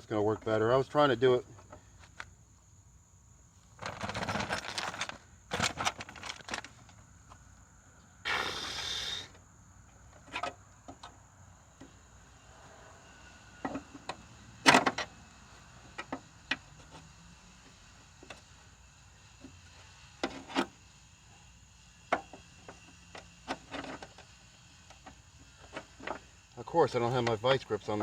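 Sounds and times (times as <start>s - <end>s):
metal scraping and rustling: 3.8s - 6.8s.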